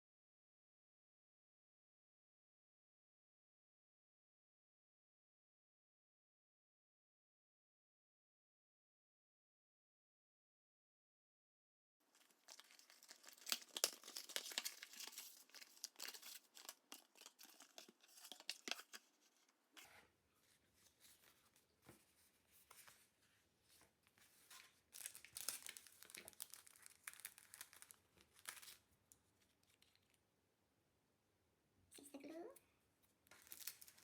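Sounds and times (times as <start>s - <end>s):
packaging torn and crinkled: 12.1s - 19.1s, 24.9s - 28.8s, 33.3s - 34.0s.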